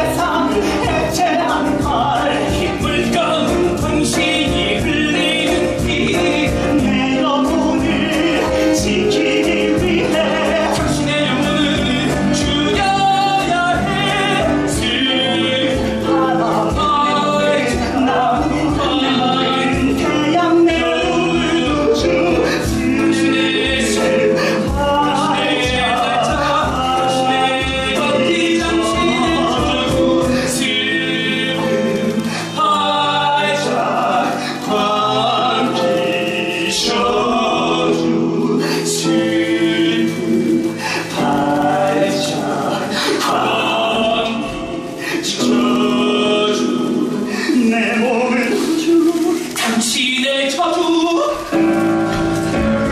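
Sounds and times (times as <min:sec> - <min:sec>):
instrumental accompaniment: 0:00.0 - 0:52.9
men singing: 0:00.0 - 0:52.9.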